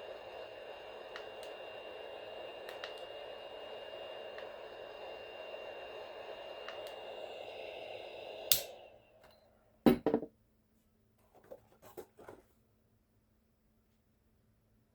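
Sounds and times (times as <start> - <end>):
hot air gun fan blowing: 0.0 - 9.6
switch click: 8.5 - 8.8.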